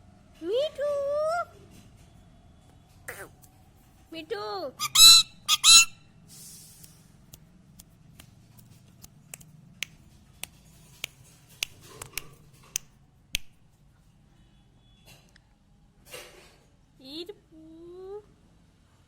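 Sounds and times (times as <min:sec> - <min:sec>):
sharp clicks and taps: 0:07.3 - 0:13.6.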